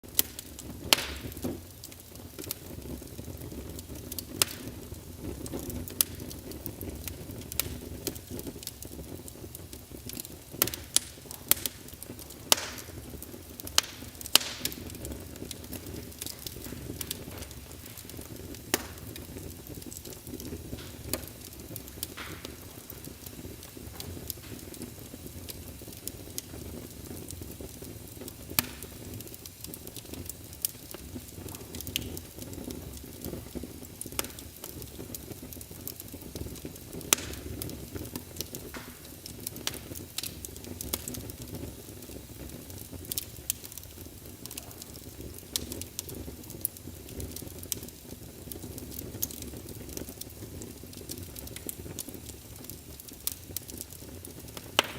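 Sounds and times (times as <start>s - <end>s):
fire crackling and popping: 0.0s - 54.9s
low fire rumble: 0.0s - 54.9s.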